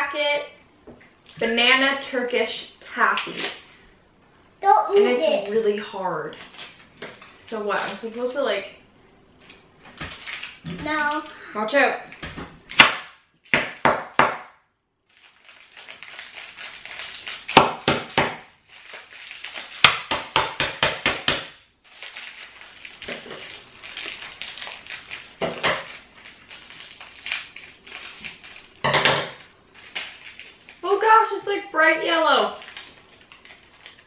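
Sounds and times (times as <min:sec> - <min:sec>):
wrapper crinkling: 0:05.4 - 0:08.5, 0:09.3 - 0:11.4, 0:15.0 - 0:20.1, 0:21.8 - 0:31.4, 0:32.0 - 0:34.0.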